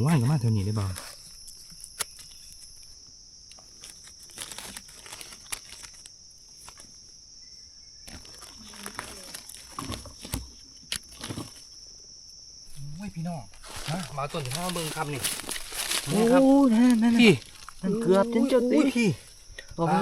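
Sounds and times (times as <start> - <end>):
insects droning: 0.0 - 20.0
dry leaves crackling and rustling: 3.8 - 6.8, 8.1 - 10.0, 13.5 - 18.2.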